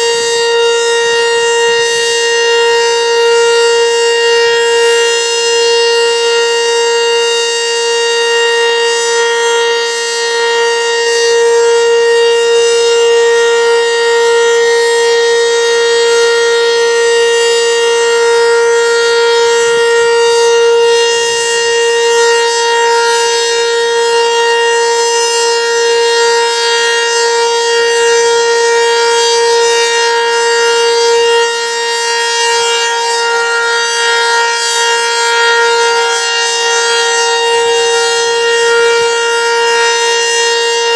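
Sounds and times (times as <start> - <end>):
outdoor warning siren: 0.0 - 40.9.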